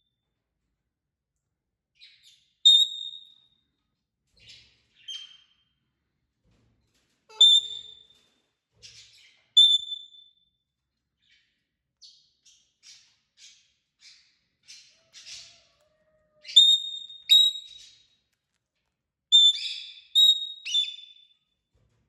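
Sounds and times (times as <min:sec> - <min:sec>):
parrot high calls: 0:07.3 - 0:08.0, 0:15.4 - 0:17.7
raspy chirps: 0:16.4 - 0:17.9, 0:19.3 - 0:21.2.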